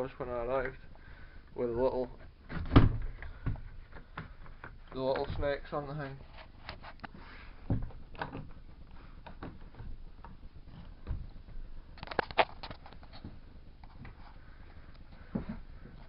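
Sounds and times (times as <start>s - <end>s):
wooden shutter knocks and rattles: 2.4s - 6.0s.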